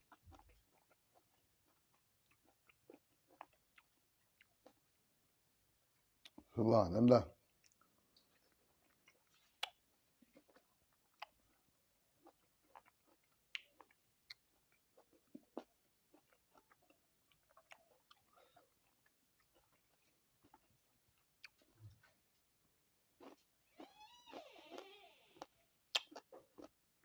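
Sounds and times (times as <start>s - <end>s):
person chewing fruit: 0.0s - 5.2s, 5.8s - 6.5s, 7.4s - 23.8s, 24.4s - 27.0s.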